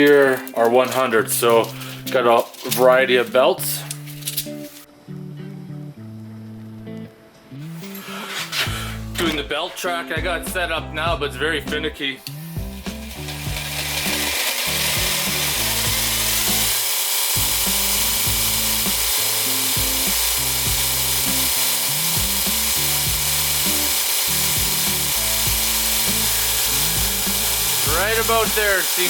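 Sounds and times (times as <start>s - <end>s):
belt sander whirring hiss: 12.2s - 29.0s.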